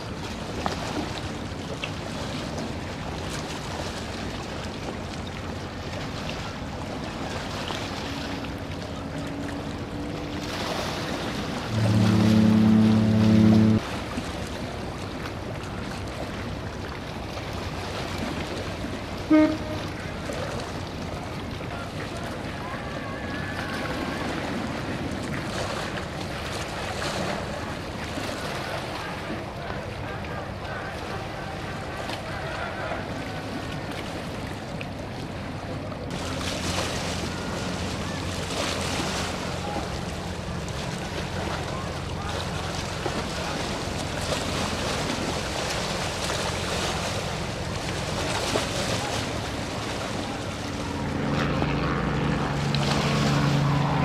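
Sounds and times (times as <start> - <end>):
boat engine droning: 0.0 - 54.0
harbour water washing: 0.0 - 54.0
short loud toot: 11.7 - 13.8, 19.3 - 20.0.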